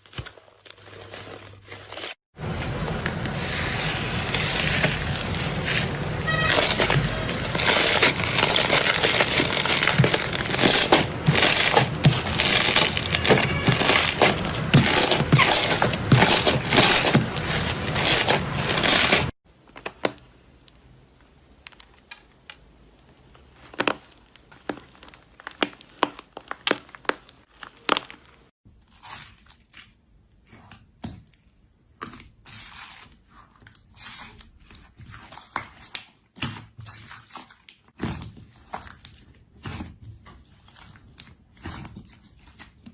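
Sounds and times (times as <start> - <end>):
slime crackling and popping: 0.0 - 20.9, 23.2 - 28.5.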